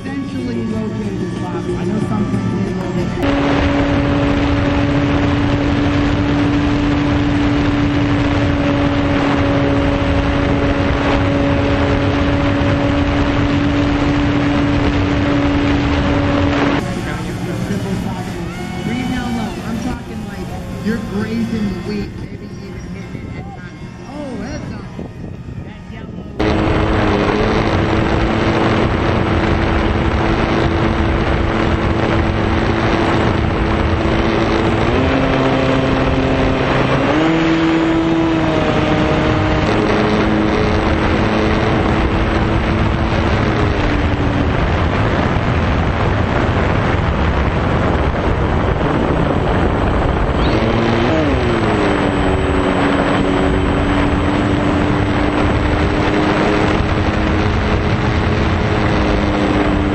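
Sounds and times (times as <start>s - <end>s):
model airplane electric motor humming: 0.0s - 46.6s
wind rush: 0.0s - 59.9s.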